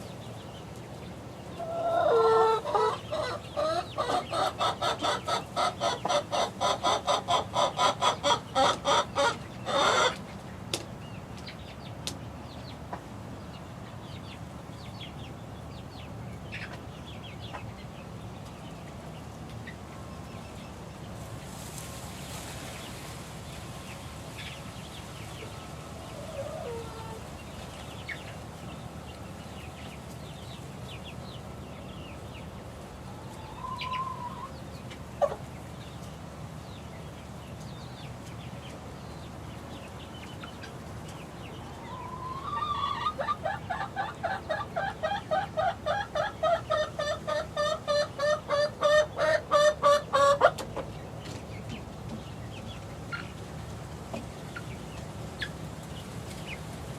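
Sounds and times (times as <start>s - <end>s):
chicks peeping: 0.0s - 56.9s
chicken short calls: 1.6s - 10.2s
chicken rapid clucks: 1.6s - 10.3s, 41.8s - 51.8s.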